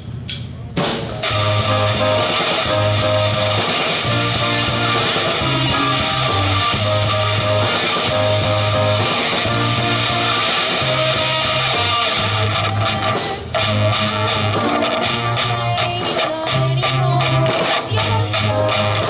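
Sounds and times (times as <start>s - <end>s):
live rock band playing: 0.7s - 19.0s
sharp drum hits: 0.8s - 19.0s.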